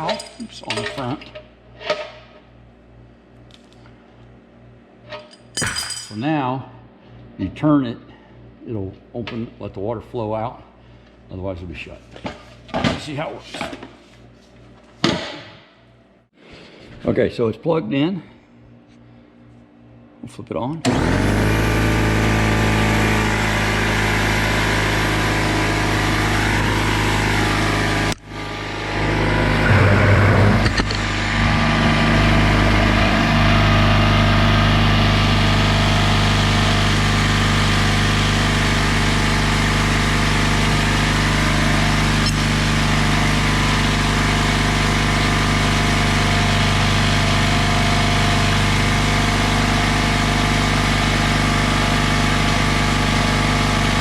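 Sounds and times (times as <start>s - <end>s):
air compressor running: 20.8s - 54.0s.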